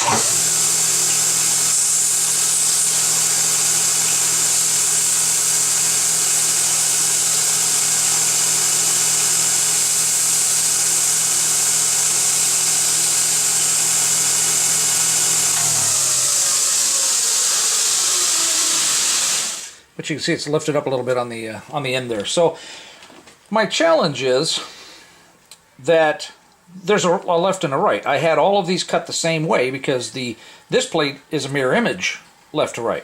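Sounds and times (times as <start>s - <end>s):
machine winding down tone: 0.0s - 19.8s
metalworking machine hiss and hum: 0.0s - 19.8s.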